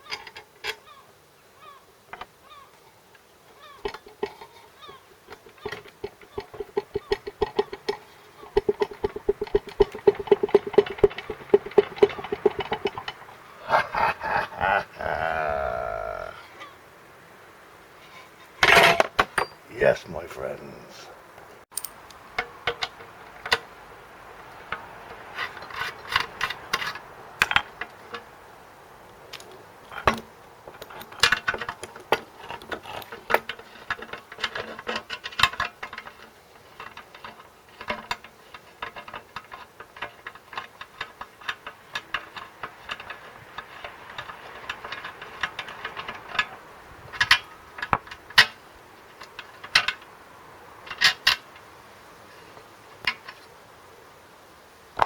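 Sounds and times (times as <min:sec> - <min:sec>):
hand tools clicking on metal: 0:03.8 - 0:16.4.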